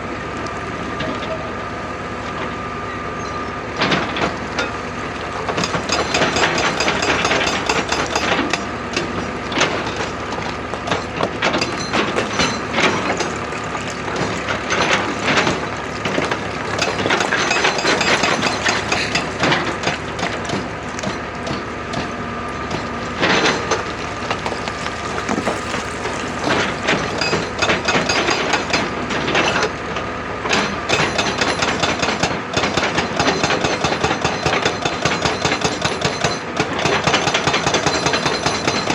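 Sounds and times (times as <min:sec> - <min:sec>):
excavator engine running: 0:00.0 - 0:33.2
rock and metal clatter: 0:03.9 - 0:22.1, 0:22.7 - 0:29.6.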